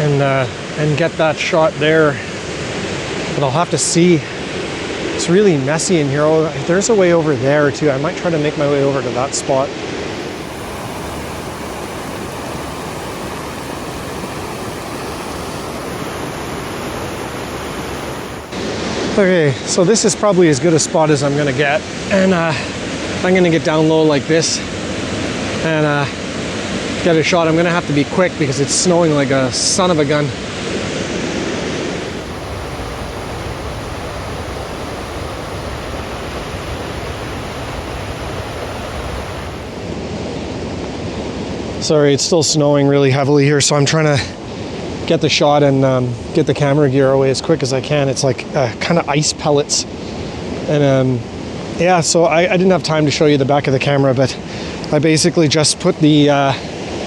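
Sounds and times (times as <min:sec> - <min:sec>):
waterfall roaring: 0:10.0 - 0:19.1, 0:31.8 - 0:40.0.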